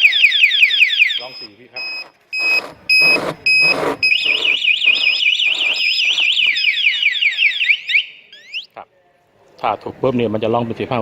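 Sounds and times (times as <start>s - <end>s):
motorcycle alarm siren: 0.0s - 8.7s.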